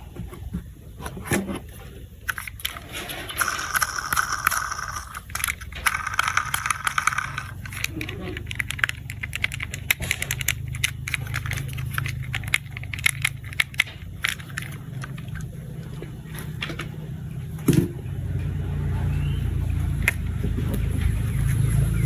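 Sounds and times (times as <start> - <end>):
steady low hum: 0.0 - 22.0
plastic toy parts clicking: 1.0 - 16.9, 20.0 - 20.2.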